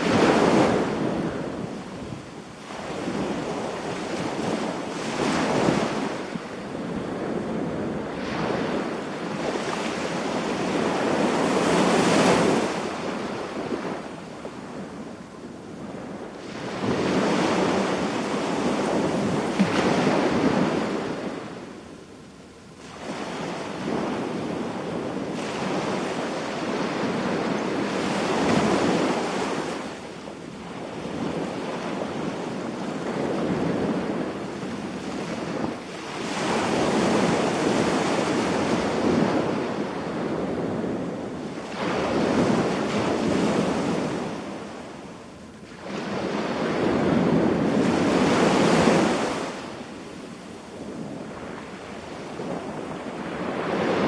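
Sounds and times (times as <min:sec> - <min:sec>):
surf breaking on beach: 0:00.0 - 0:02.2.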